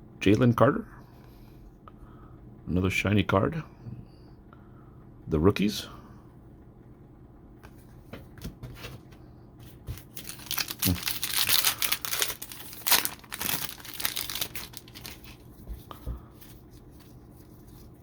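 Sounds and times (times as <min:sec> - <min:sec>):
wrapper being torn and crinkled: 0:10.0 - 0:15.5.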